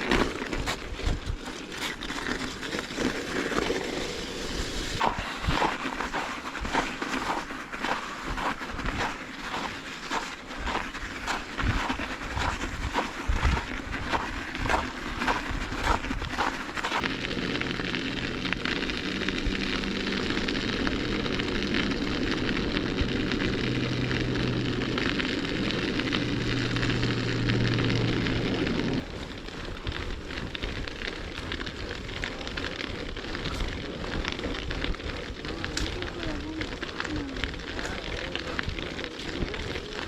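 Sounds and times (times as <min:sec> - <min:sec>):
bicycle tyres crunching snow: 0:00.0 - 0:40.0
low steady hum: 0:11.2 - 0:30.6.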